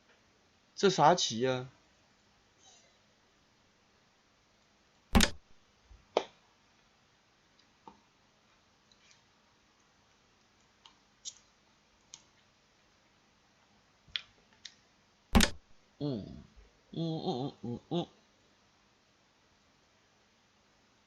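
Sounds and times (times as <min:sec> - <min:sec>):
computer mouse clicks: 0:05.2 - 0:05.4, 0:15.4 - 0:15.6.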